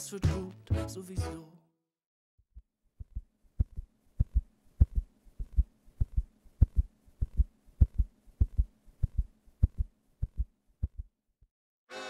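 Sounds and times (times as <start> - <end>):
heartbeat thumps: 2.6 - 11.1.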